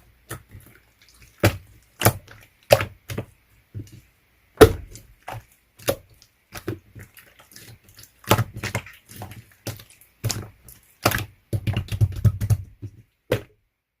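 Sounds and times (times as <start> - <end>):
slime clicking and popping: 8.3 - 12.7.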